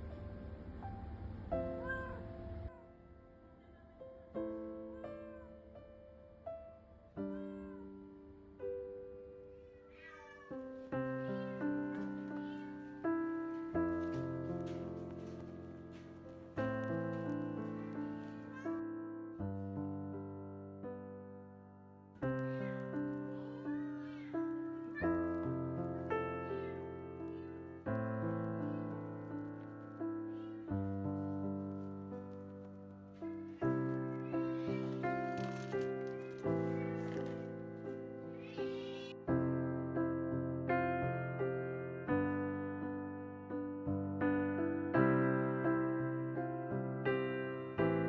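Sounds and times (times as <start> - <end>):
gentle piano music: 0.0 - 48.0
cat meowing: 9.8 - 12.8, 38.3 - 39.2.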